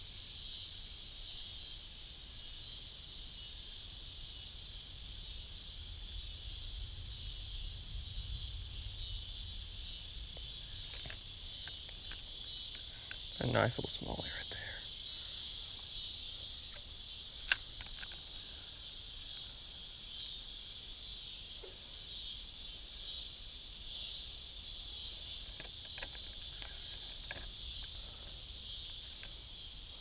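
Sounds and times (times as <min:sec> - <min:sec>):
insects chirping: 0:00.0 - 0:30.0
faint ticks: 0:10.3 - 0:13.4, 0:25.2 - 0:30.0.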